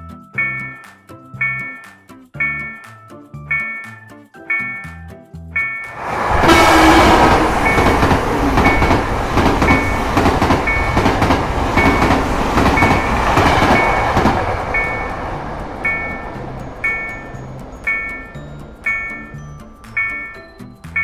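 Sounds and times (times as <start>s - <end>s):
crossing bell ringing: 5.6s - 21.0s
train wheels clattering: 5.9s - 20.5s.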